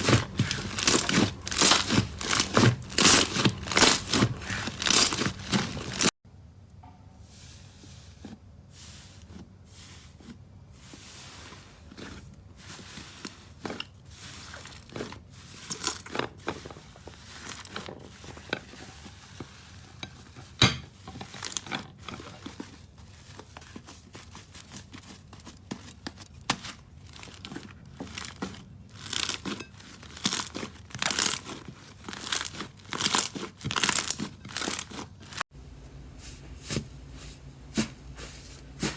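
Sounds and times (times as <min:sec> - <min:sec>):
slime crackling and popping: 0:00.0 - 0:06.1.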